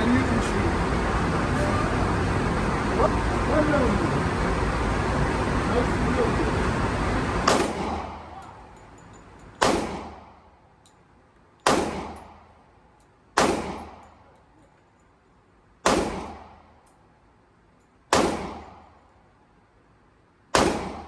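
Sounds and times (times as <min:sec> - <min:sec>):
handgun shots with echo: 0:07.5 - 0:08.2, 0:09.6 - 0:10.2, 0:11.6 - 0:12.3, 0:13.4 - 0:14.0, 0:15.8 - 0:16.5, 0:18.1 - 0:18.8, 0:20.6 - 0:21.0.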